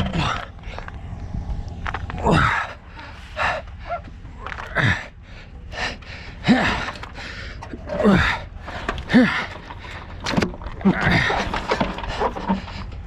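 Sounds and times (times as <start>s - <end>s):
steady low rumble: 0.0s - 13.0s
person gasping and grunting: 2.2s - 4.0s, 4.6s - 10.0s.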